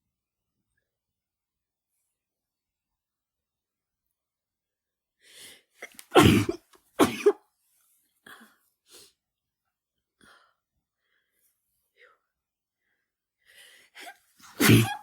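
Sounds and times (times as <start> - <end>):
breathing: 5.2 - 5.8, 10.2 - 14.2
woman sneezing: 5.9 - 7.4, 14.5 - 15.0.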